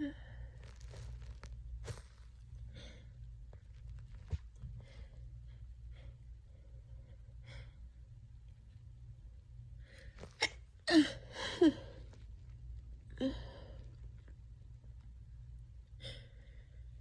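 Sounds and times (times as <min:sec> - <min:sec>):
person breathing quietly: 0:00.0 - 0:01.1, 0:02.6 - 0:03.3, 0:13.1 - 0:14.2, 0:16.0 - 0:17.0.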